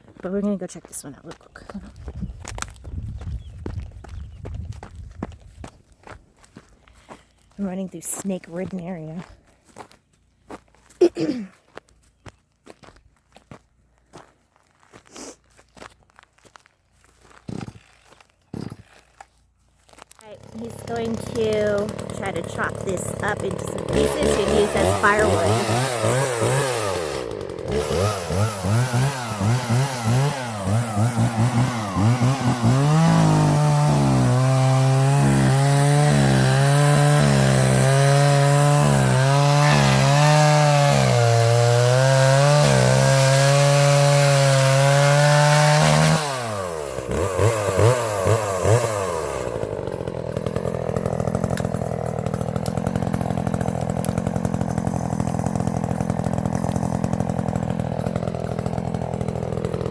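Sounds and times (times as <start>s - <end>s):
chainsaw cutting wood: 17.4s - 19.4s, 20.0s - 59.9s
chainsaw idling: 20.2s - 59.9s
chainsaw revving: 20.2s - 59.9s.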